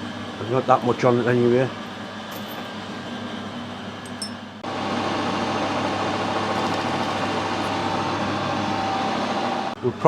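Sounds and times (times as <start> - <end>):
metal lathe running with whine: 4.6 - 10.0.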